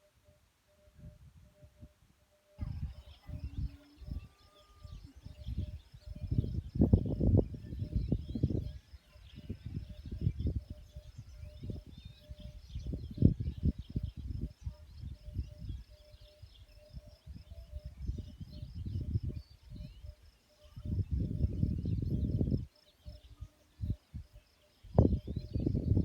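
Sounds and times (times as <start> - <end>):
faint bird chirps: 0.0 - 26.0
pulsing insect call: 0.0 - 26.0.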